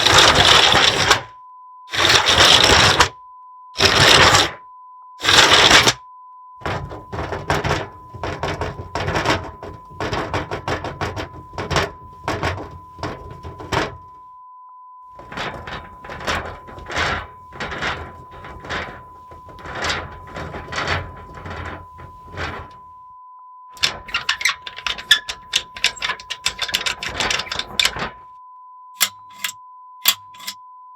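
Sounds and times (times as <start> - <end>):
sliding window rattling and scraping: 0.0 - 1.3, 1.9 - 3.1, 3.8 - 4.6, 5.2 - 6.0, 6.6 - 14.1, 15.2 - 22.8, 23.8 - 28.2.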